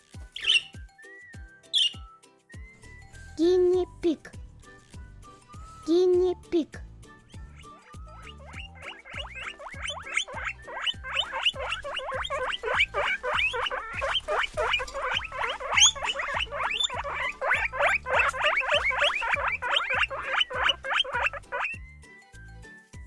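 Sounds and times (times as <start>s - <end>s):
children's music: 0.0s - 23.0s
guinea pig squeaking: 0.3s - 0.8s, 1.7s - 2.0s, 7.2s - 21.8s.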